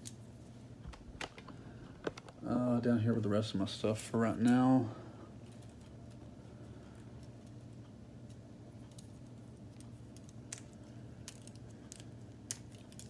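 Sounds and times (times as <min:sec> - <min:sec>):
low steady hum: 0:00.0 - 0:13.0
plastic pieces clicking: 0:08.9 - 0:13.0.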